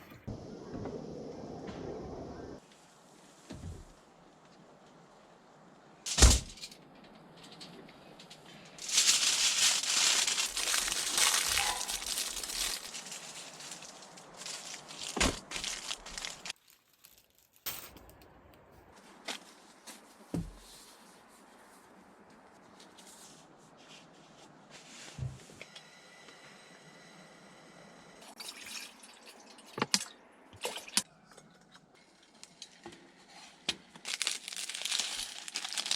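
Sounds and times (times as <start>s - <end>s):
crinkling rustling handling noise: 6.1s - 17.7s, 34.0s - 35.9s.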